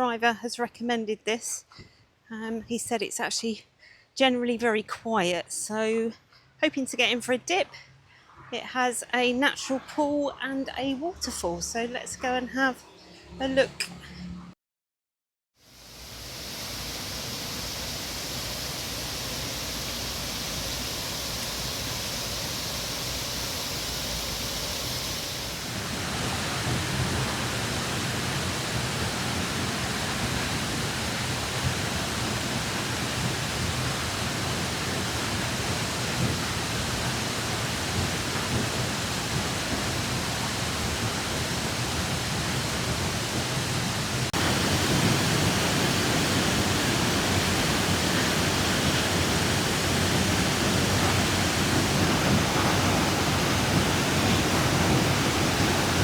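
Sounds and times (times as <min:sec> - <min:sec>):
waterfall rushing: 0:15.7 - 0:56.0.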